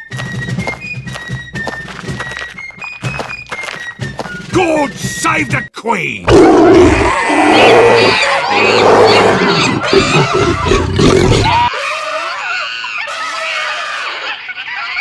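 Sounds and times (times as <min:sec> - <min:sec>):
loud roaring: 0:06.2 - 0:11.7.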